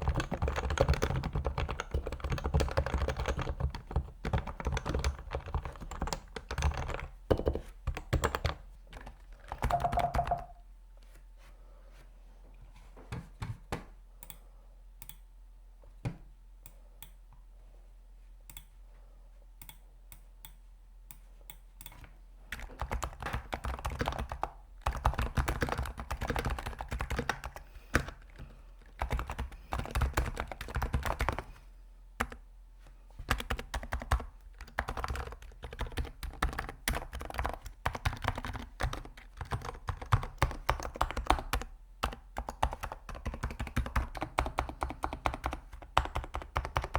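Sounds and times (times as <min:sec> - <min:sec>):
computer keyboard typing: 0:00.0 - 0:10.6, 0:21.5 - 0:31.5, 0:33.2 - 0:46.9.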